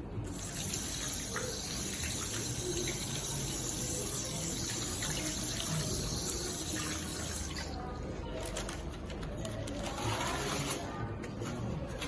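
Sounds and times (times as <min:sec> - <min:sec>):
tap water running into sink: 0:00.3 - 0:07.8.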